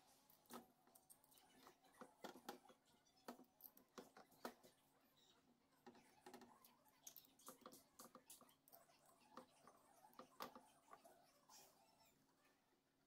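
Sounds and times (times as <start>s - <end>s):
faint light clicks and taps: 0.3s - 4.8s, 5.8s - 11.1s.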